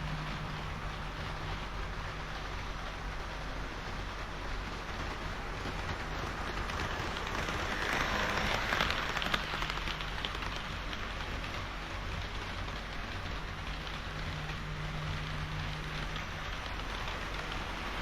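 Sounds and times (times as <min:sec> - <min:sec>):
low motor hum: 0:00.0 - 0:03.5, 0:09.0 - 0:18.0
model train wheels rushing on rails: 0:00.0 - 0:18.0
sharp clicks of train wheels: 0:00.0 - 0:18.0.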